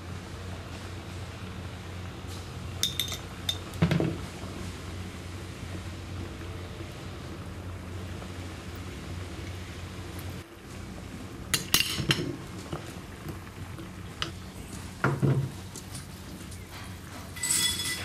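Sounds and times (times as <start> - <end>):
steady low hum: 0.0 - 18.0
utensils clinking against a pan: 2.8 - 3.7, 16.7 - 18.0.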